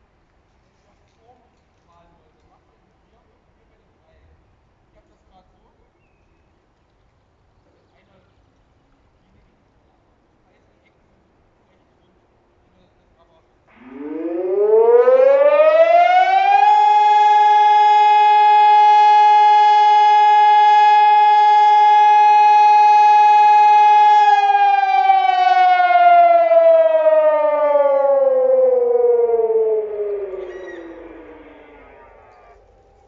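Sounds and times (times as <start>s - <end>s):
civil defence siren: 13.7s - 33.0s.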